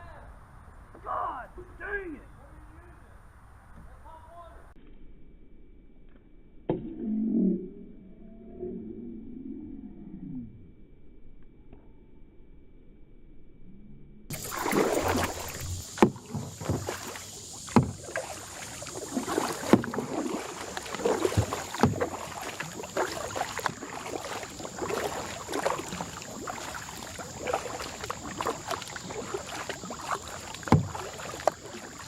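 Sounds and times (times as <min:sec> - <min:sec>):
paddle strokes splashing water: 0:14.3 - 0:32.0
sharp knocks: 0:15.2 - 0:17.0, 0:17.7 - 0:18.0, 0:30.6 - 0:31.0.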